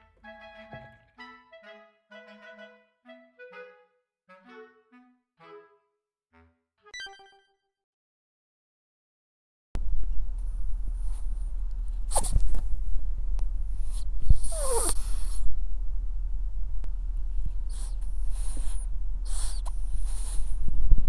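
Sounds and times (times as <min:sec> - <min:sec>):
steady low hum: 0:09.8 - 0:21.0
ferret snuffling breaths: 0:10.3 - 0:15.7, 0:17.1 - 0:21.0.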